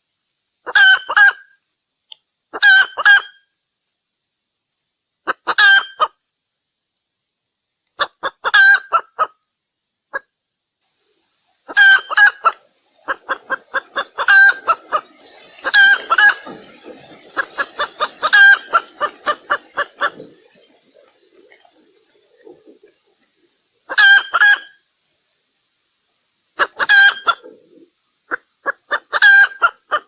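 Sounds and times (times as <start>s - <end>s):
hen clucking: 0.6s - 1.5s, 2.5s - 3.4s, 8.0s - 9.4s, 11.6s - 24.8s, 26.6s - 30.0s.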